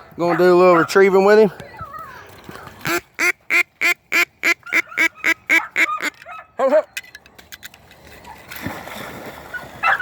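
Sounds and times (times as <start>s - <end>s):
duck quacks: 2.8s - 6.1s.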